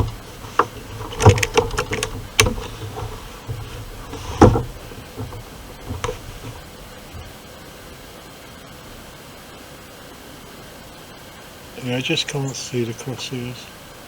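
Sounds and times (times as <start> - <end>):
air rifle clicks and knocks: 0.0 - 7.3.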